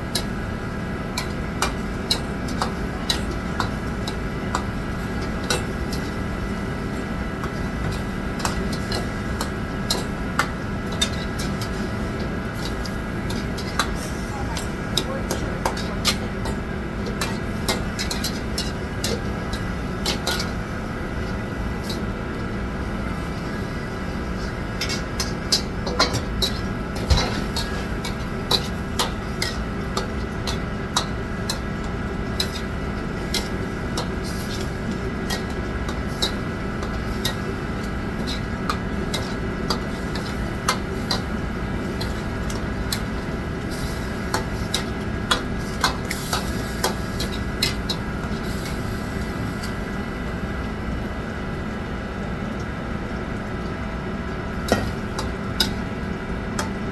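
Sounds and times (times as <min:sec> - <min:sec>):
steady mechanical hum: 0:00.0 - 0:56.9
metal utensils clinking on pans: 0:07.5 - 0:20.5, 0:24.8 - 0:31.6, 0:33.3 - 0:41.3.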